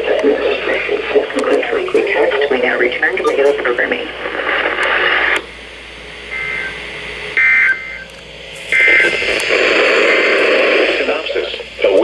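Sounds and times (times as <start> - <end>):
radio hiss: 0.0 - 12.0
two-tone digital bursts: 6.3 - 8.1.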